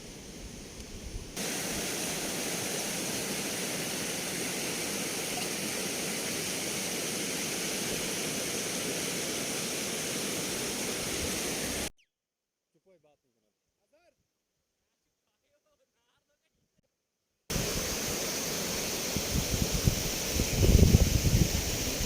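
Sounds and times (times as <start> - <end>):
fast-flowing river water: 1.4 - 11.9.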